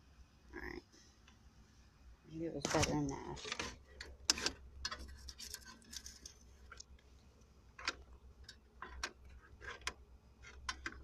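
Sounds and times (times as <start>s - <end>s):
low steady hum: 0.0s - 11.0s
small parts clicking and knocking: 2.6s - 7.0s, 7.7s - 11.0s.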